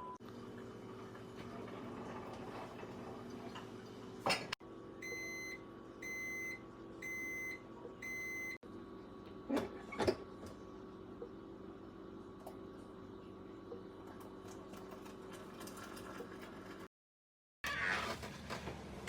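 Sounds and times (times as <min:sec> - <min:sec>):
appliance beeps: 0:00.0 - 0:00.2, 0:05.0 - 0:08.6.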